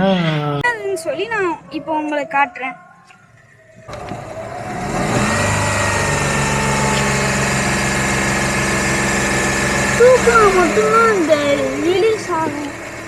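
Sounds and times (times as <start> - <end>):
car engine idling: 3.3 - 13.0.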